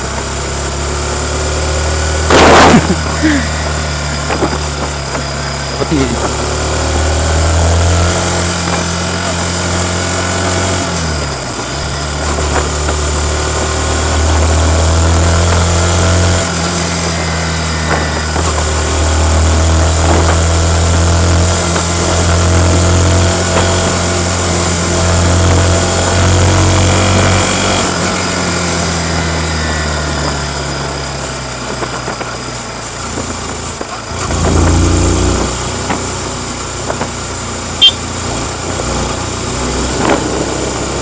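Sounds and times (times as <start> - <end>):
motorcycle engine running: 0.0 - 41.0.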